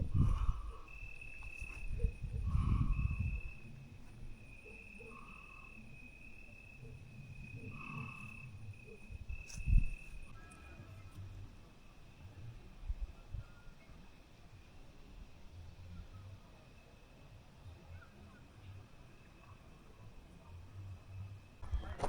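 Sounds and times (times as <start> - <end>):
crickets trilling: 0.0 - 12.5.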